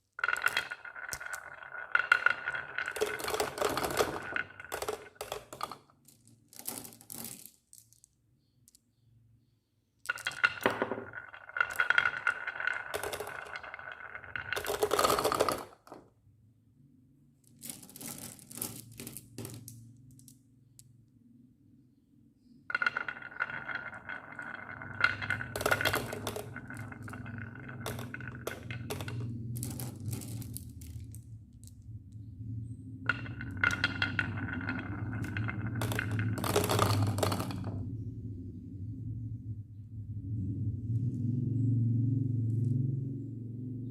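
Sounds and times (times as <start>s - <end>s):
marbles rolling down a marble run: 0.0s - 8.8s, 10.1s - 16.1s, 17.5s - 20.4s, 22.7s - 38.0s.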